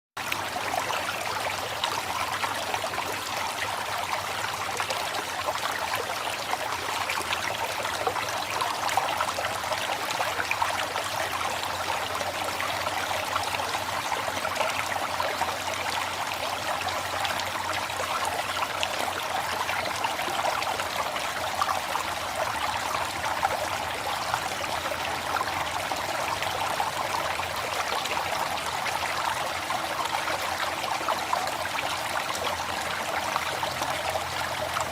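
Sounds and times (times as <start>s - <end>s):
river water flowing: 0.2s - 34.9s.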